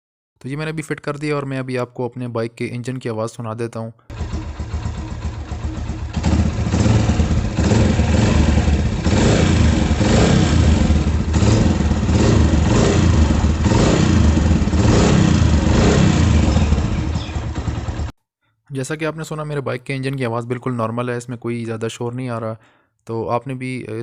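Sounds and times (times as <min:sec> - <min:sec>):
motorcycle engine revving: 0:04.1 - 0:18.1.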